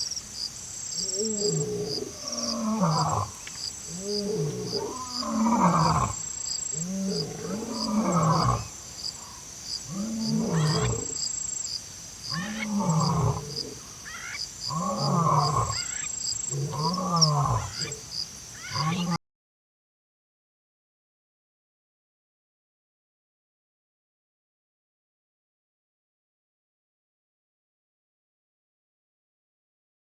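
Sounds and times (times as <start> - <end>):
insects chirping: 0.0 - 19.2
large animal calling low: 1.0 - 11.2, 18.6 - 19.2.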